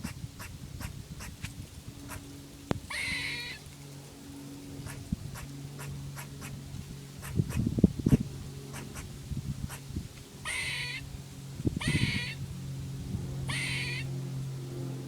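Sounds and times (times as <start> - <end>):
squirrel chucking: 2.8 - 3.6, 10.4 - 11.0, 11.8 - 12.4, 13.5 - 14.1
squirrel squealing call: 2.8 - 3.6, 10.4 - 11.1, 11.8 - 12.4, 13.5 - 14.1.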